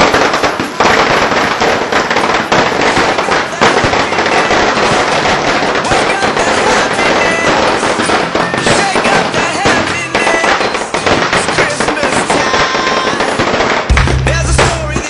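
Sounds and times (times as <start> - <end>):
firecrackers banging: 0.0 - 15.0
voices: 1.9 - 15.0
music with heavy bass: 13.9 - 15.0.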